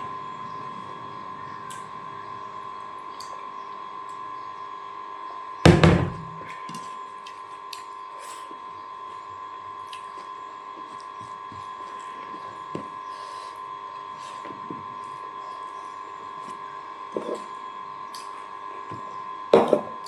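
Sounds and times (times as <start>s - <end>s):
faint steady hum: 0.0s - 20.0s
loud thunk: 5.7s - 6.2s.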